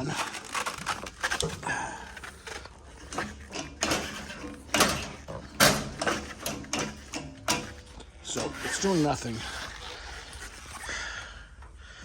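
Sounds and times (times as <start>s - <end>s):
starter lever metallic clunks: 3.1s - 8.6s.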